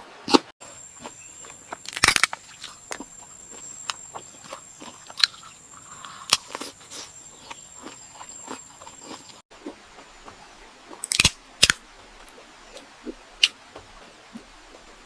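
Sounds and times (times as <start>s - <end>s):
crunching and chewing crispy food: 0.6s - 9.4s, 10.9s - 11.4s.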